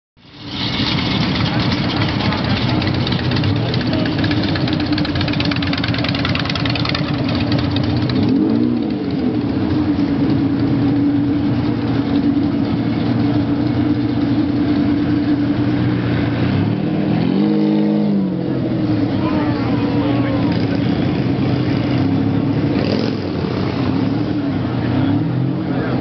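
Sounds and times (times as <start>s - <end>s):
sports car engine idling and revving: 0.2s - 26.0s.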